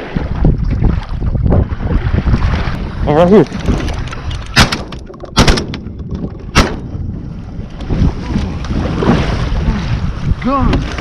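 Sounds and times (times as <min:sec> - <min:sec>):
water: 0:00.0 - 0:11.0
wind: 0:00.0 - 0:11.0
shotgun shots: 0:04.6 - 0:05.8, 0:06.5 - 0:06.9.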